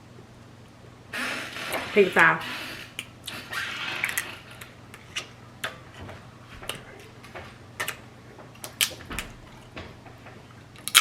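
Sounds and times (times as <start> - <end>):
crab shell cracking: 10.8 - 11.0.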